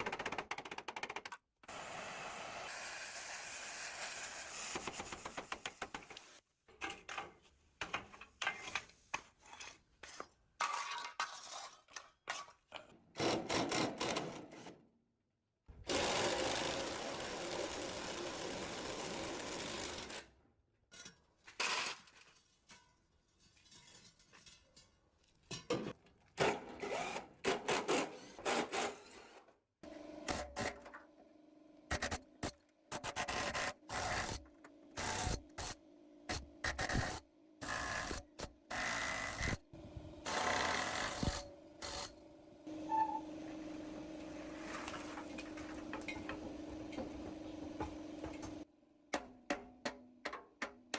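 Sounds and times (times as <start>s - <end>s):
hand tool scraping metal: 9.4s - 12.6s.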